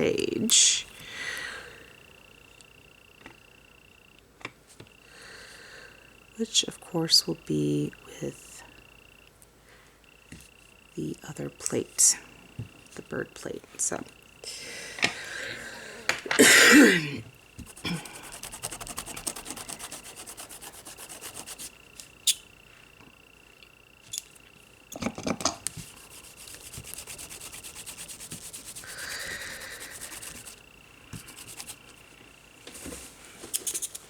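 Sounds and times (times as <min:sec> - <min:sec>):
faint high whine: 0:00.0 - 0:34.0
fast rubbing strokes: 0:17.6 - 0:21.8, 0:25.8 - 0:30.6, 0:31.2 - 0:32.0.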